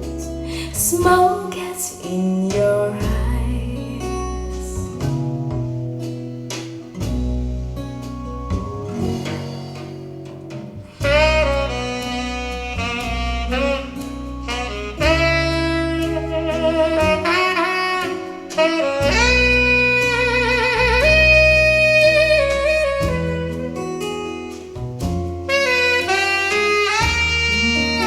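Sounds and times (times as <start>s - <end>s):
guitar and bass backing: 0.0s - 28.0s
saxophone solo with vibrato: 10.9s - 24.6s, 25.5s - 28.0s.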